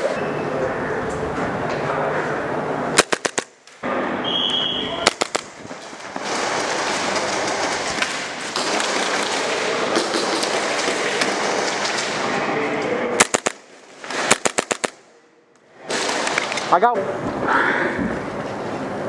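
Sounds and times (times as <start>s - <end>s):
rapid pistol shots: 3.0s - 3.6s, 5.0s - 11.8s, 13.2s - 15.1s.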